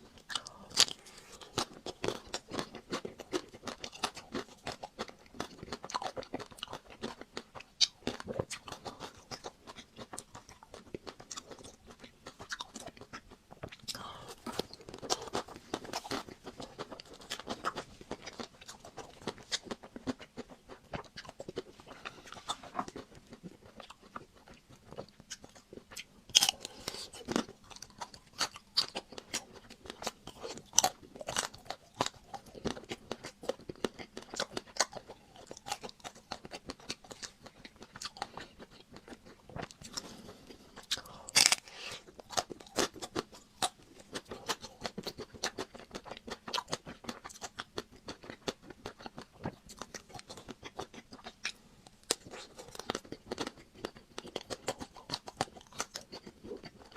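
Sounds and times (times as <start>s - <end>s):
chocolate shell crunching while chewing: 0.0s - 56.9s.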